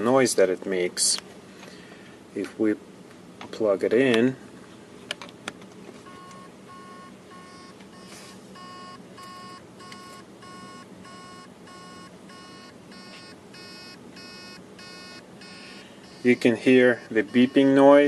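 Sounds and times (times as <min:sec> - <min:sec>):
hard drive beeping: 0:06.0 - 0:18.0.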